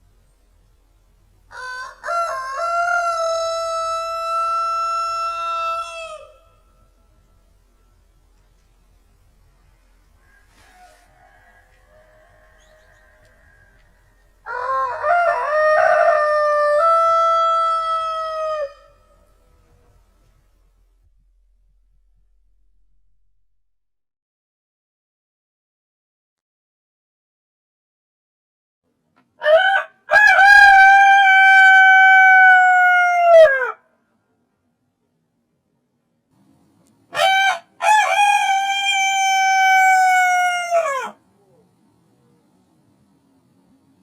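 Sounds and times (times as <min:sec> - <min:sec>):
slowed rooster crowing: 0:01.5 - 0:08.2, 0:09.7 - 0:20.5, 0:29.4 - 0:33.9, 0:37.1 - 0:41.2.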